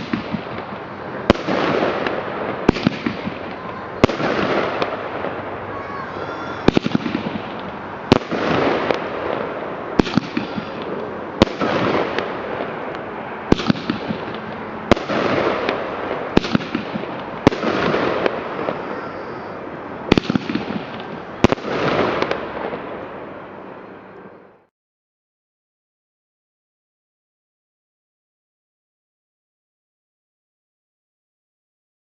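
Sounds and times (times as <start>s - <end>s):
fireworks banging: 0.0s - 24.7s
fireworks crackling: 0.0s - 24.7s.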